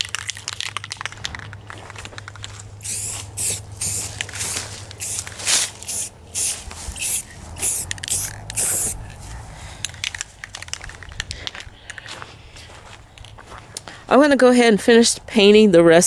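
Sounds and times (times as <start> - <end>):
spray paint can hissing: 2.8 - 9.0.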